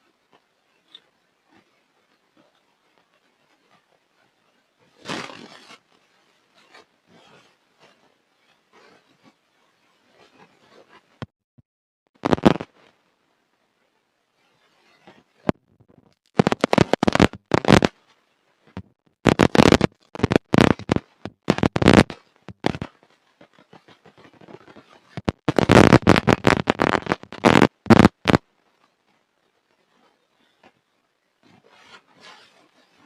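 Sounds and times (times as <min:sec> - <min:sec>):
dry mud crunching and crackling: 0:15.5 - 0:18.0, 0:18.8 - 0:22.9, 0:24.0 - 0:28.4.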